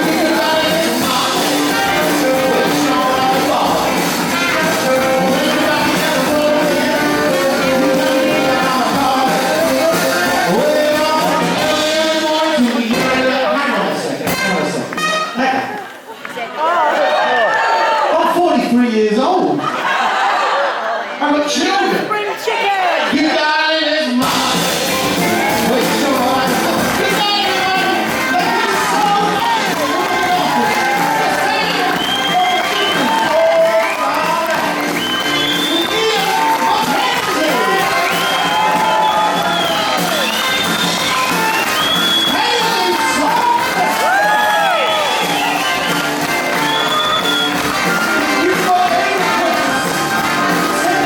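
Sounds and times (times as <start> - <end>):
person singing: 0.0 - 13.6, 23.2 - 45.1, 47.2 - 51.0
rock and roll band playing: 0.0 - 15.7, 21.5 - 51.0.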